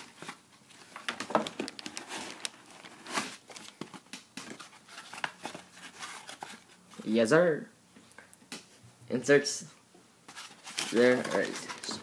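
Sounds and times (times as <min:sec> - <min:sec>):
packaging crinkling and rustling: 0:00.0 - 0:07.1, 0:10.3 - 0:12.0.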